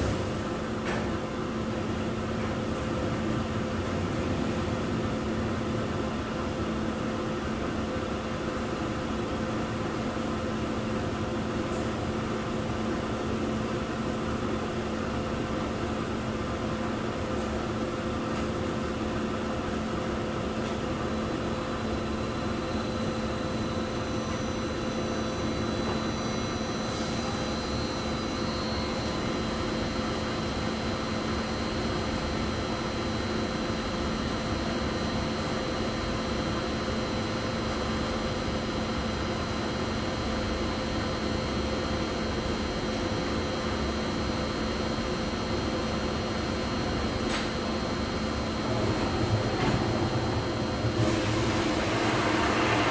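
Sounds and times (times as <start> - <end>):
dyeing machine humming: 45.9 - 52.9.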